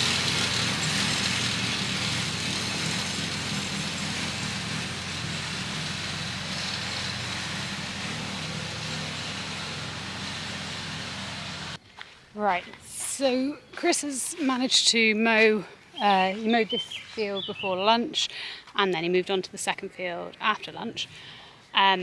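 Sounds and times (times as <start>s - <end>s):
tractor engine running: 0.0s - 11.8s.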